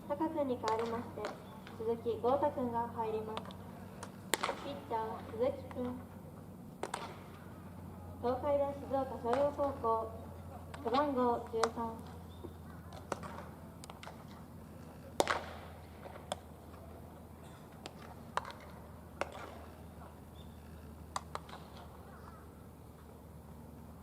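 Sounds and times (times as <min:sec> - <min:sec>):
faint distant voices: 0:00.0 - 0:24.0
low steady hum: 0:00.0 - 0:24.0
baseball smacking into mitt: 0:04.3 - 0:04.7, 0:06.8 - 0:07.2, 0:15.2 - 0:16.5.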